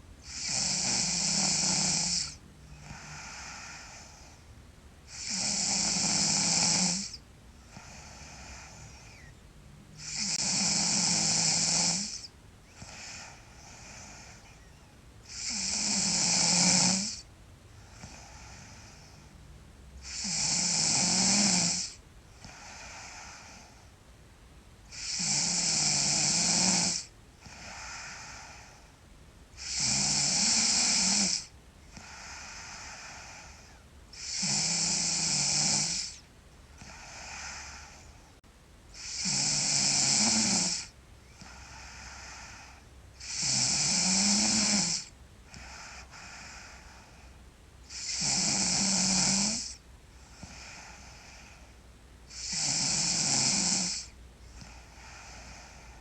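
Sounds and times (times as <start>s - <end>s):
girl snoring loudly: 0.2s - 4.4s, 5.1s - 9.3s, 10.0s - 17.2s, 20.0s - 23.8s, 24.9s - 28.8s, 29.6s - 36.2s, 36.8s - 38.1s, 39.0s - 47.1s, 47.9s - 51.6s, 52.3s - 56.0s.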